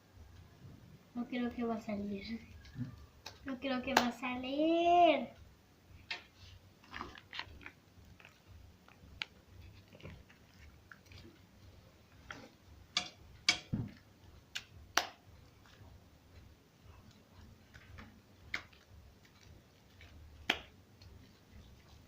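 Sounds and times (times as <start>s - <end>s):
wet slime clicks and smacks: 14.5s - 15.2s, 17.7s - 19.4s, 20.0s - 20.8s.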